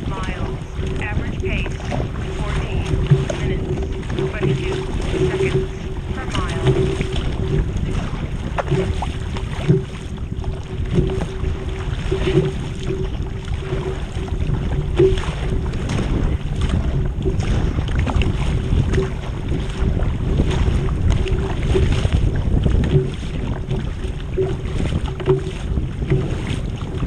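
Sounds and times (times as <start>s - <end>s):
water splashing and sloshing: 0.0s - 27.0s
wind buffeting microphone: 0.0s - 27.0s.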